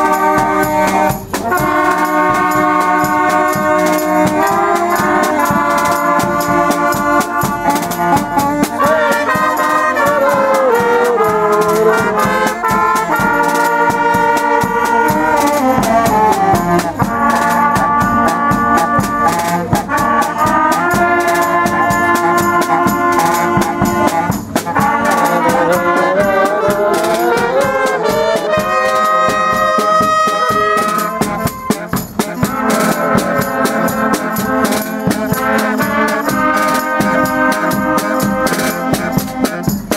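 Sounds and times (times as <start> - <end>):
drums: 0.0 - 39.9
trumpets and trombones: 0.0 - 39.9.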